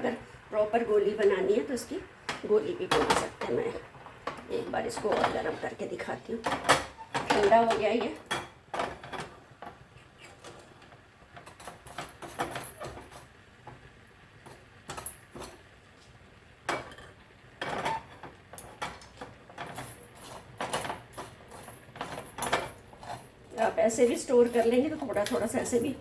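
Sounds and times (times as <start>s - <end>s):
spoon scraping against a pan: 11.4s - 13.4s, 14.4s - 15.7s, 16.7s - 26.0s.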